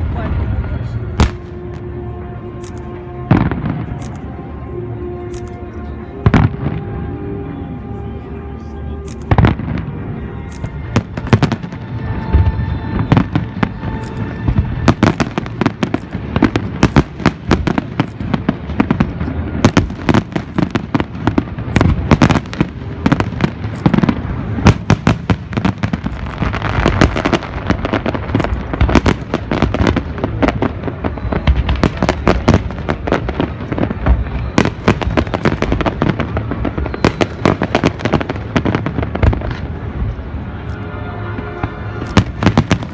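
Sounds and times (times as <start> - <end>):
fireworks bangs and crackles: 0.0 - 4.6, 5.8 - 7.7, 9.0 - 42.9
music playing: 0.0 - 30.7.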